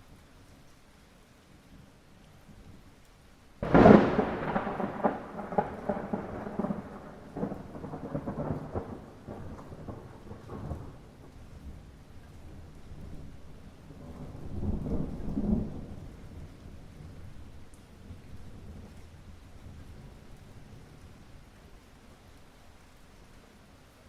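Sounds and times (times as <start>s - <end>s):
light rain falling: 0.0s - 24.0s
thunderclap with rolling rumble: 3.6s - 19.0s.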